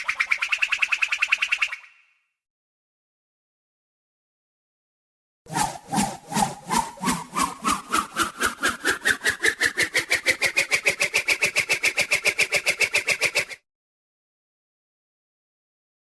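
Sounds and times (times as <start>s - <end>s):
cartoon whooshes rising in pitch: 5.5s - 10.6s.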